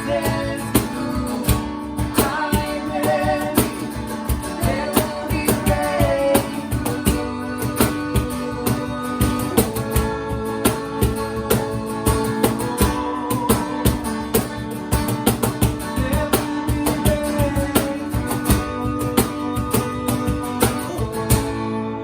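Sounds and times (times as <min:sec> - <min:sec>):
steady drum beat: 0:00.0 - 0:21.5
guitar chords: 0:00.0 - 0:22.0.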